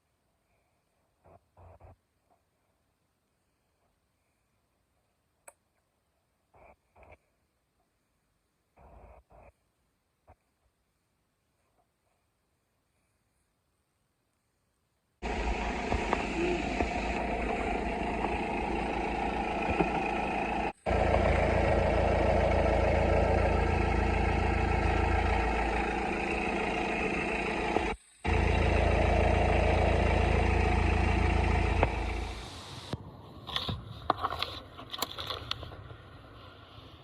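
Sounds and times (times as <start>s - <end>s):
diesel engine idling: 15.2s - 33.0s.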